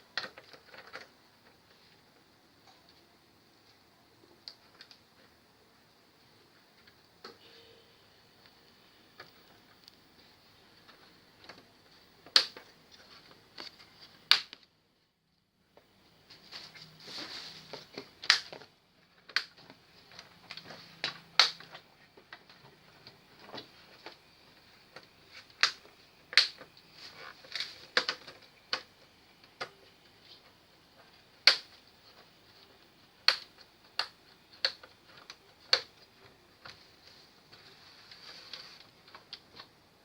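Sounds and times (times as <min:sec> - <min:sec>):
plastic and metal parts clicking: 0:27.3 - 0:30.5.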